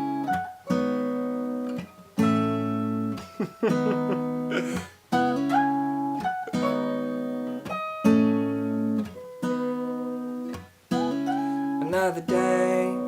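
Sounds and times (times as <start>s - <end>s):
acoustic guitar strumming chords: 0.0s - 13.0s
person singing: 10.9s - 13.0s.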